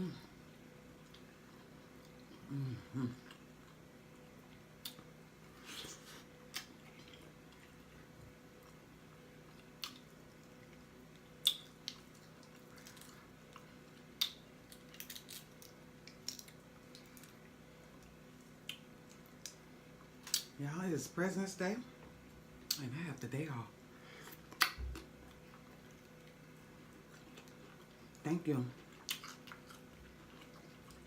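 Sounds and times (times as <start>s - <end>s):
lip smacks and pops: 9.6s - 10.1s, 11.3s - 12.1s, 14.1s - 17.1s, 18.6s - 19.6s, 20.2s - 20.6s, 24.3s - 25.1s
wet chewing: 24.3s - 28.2s, 28.8s - 31.0s.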